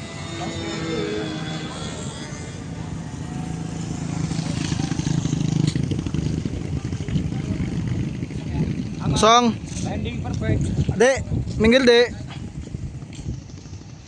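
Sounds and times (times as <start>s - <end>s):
small engine droning past: 0.0s - 9.0s.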